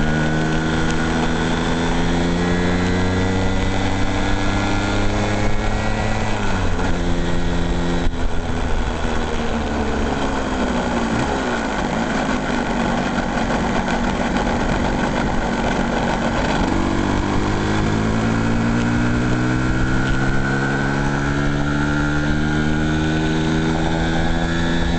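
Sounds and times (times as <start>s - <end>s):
engine running: 0.0s - 24.9s.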